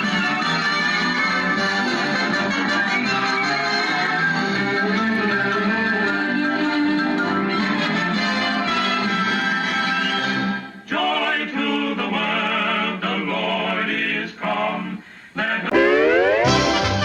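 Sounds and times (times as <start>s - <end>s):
orchestral cartoon music: 0.0s - 10.4s, 15.7s - 17.0s.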